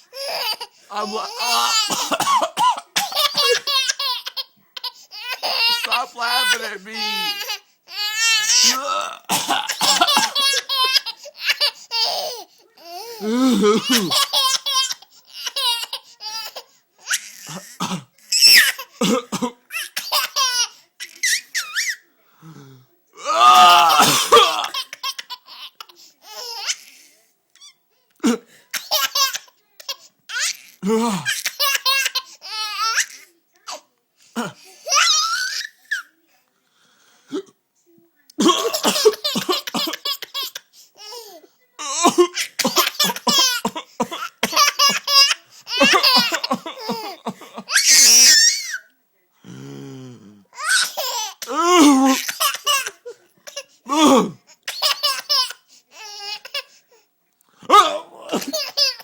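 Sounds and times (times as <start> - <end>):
man coughing: 0.9 - 3.7, 5.7 - 7.4, 8.6 - 10.6, 13.2 - 14.4, 19.0 - 19.6, 23.2 - 24.8, 38.4 - 40.0, 42.0 - 44.9, 45.7 - 47.7, 51.0 - 52.8, 53.9 - 54.9, 57.7 - 58.8
baby laughing: 3.1 - 9.0, 10.0 - 13.2, 13.8 - 17.6.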